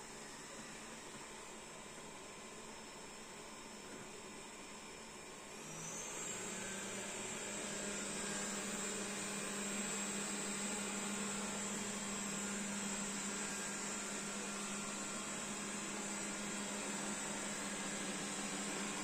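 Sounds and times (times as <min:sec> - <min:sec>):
robot vacuum whining: 0:05.6 - 0:19.0.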